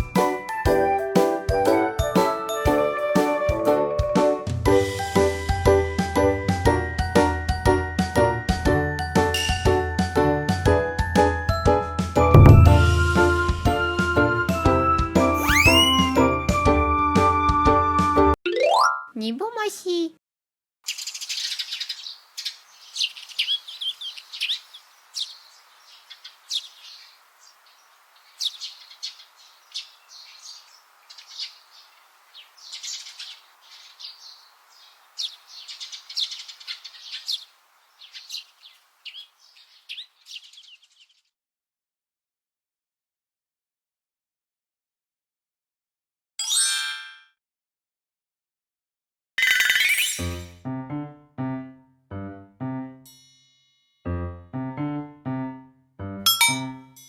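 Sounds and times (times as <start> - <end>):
rising bell-like chime: 12.4 - 13.5
songbirds chirping and trilling: 20.8 - 41.3.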